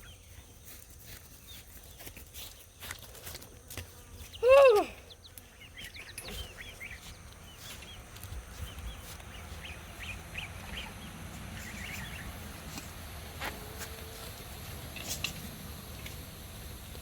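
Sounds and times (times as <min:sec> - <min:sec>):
chicks peeping: 0:04.2 - 0:15.2.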